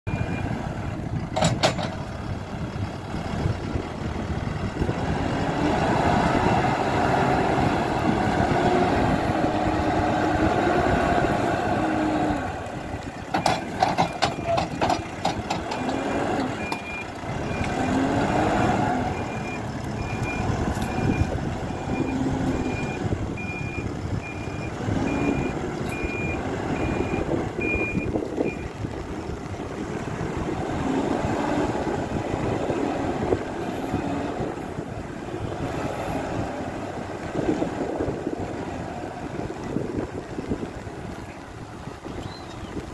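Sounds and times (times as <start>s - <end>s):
diesel engine revving: 0.1s - 42.9s
knocks and clatter: 1.2s - 2.2s, 13.3s - 16.0s.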